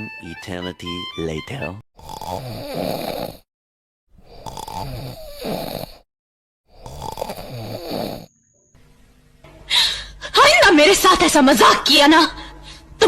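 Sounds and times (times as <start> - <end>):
person snoring: 2.0 - 3.5, 4.2 - 6.1, 6.7 - 8.3.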